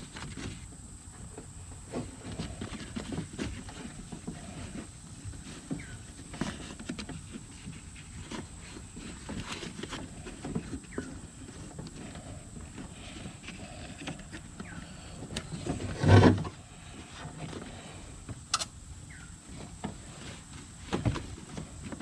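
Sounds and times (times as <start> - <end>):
sharp click: 18.5 - 18.8.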